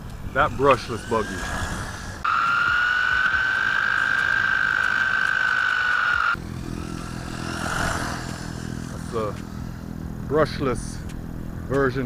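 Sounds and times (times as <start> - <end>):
electric motor whining: 0.2 - 10.3
low steady hum: 6.3 - 12.0.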